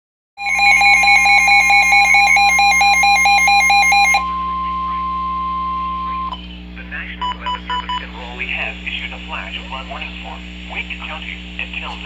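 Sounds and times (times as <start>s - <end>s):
steady alarm tone: 0.4s - 6.3s
two-pitch electronic beeping alarm: 0.4s - 6.4s.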